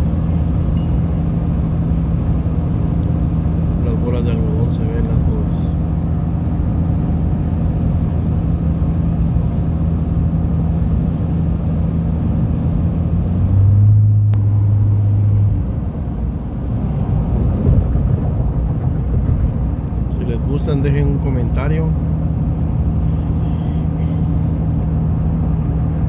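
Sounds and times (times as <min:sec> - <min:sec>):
car road and engine noise: 0:00.0 - 0:26.0.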